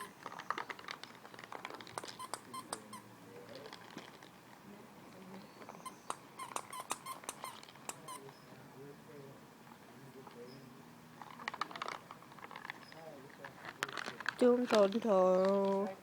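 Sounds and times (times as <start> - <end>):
puppies squeaking: 0.0 - 1.0, 1.8 - 3.2, 5.4 - 8.6.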